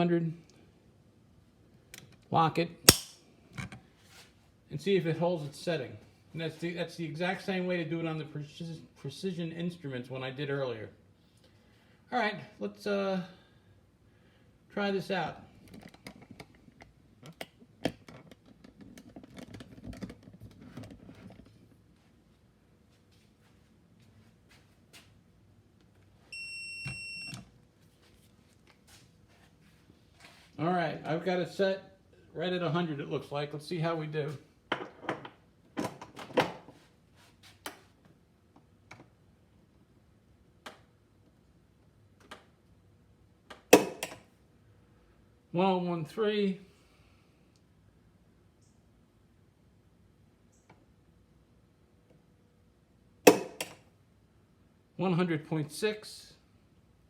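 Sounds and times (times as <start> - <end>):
torque wrench metallic clicks: 2.9 - 3.2.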